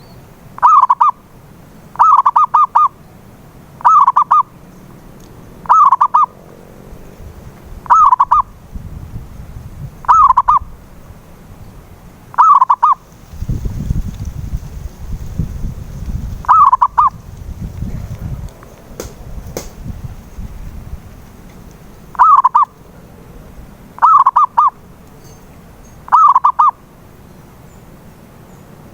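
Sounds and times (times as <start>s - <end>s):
dove cooing: 2.0s - 3.0s, 3.8s - 4.5s, 5.6s - 6.4s, 7.8s - 8.5s, 10.0s - 10.7s, 12.4s - 13.0s, 16.5s - 17.2s, 22.0s - 24.8s, 26.1s - 26.8s.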